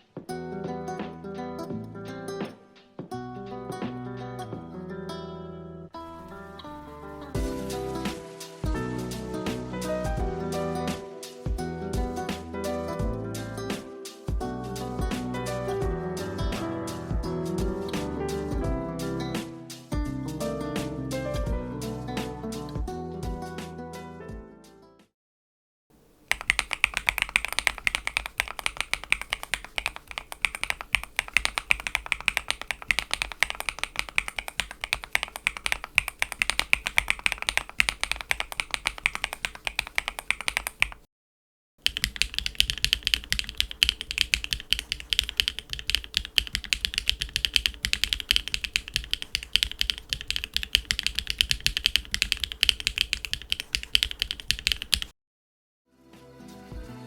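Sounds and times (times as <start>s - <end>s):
mechanical keyboard typing: 26.1s - 41.1s, 41.8s - 55.1s
higher-pitched keyboard clacks: 26.2s - 41.1s, 41.8s - 55.1s.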